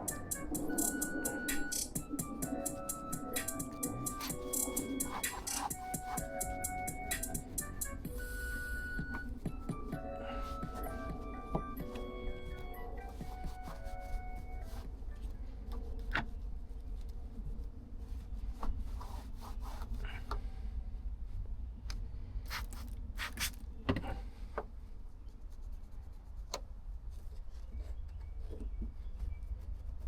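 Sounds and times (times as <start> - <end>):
hands rubbing and scraping plastic: 0.0 - 20.3.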